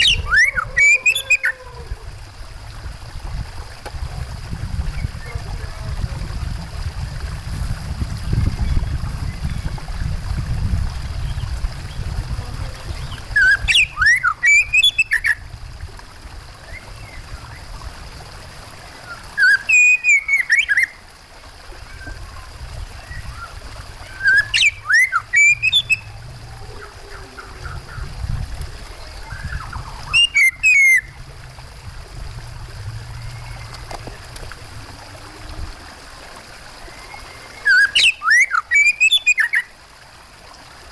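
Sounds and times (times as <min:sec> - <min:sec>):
bird whistling song: 0:00.0 - 0:01.6, 0:12.9 - 0:15.4, 0:19.1 - 0:21.0, 0:23.0 - 0:26.2, 0:29.1 - 0:31.2, 0:36.9 - 0:39.7
low rush of water: 0:00.0 - 0:40.9.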